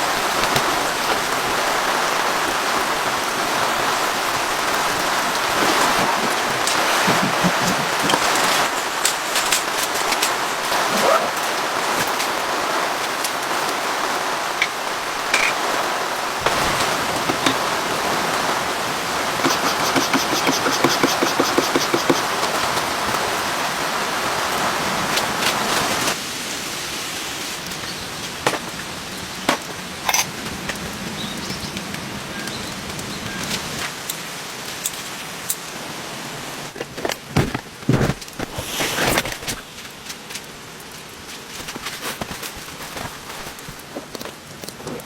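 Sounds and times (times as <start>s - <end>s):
rain falling: 0.0s - 45.0s
drops striking a surface: 19.4s - 22.3s
rapid ticks: 19.4s - 22.5s.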